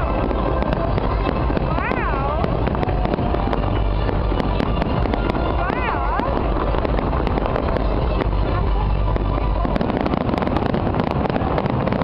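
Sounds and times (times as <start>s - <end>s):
fireworks crackling and popping: 0.0s - 12.0s
low rumble: 0.0s - 12.0s.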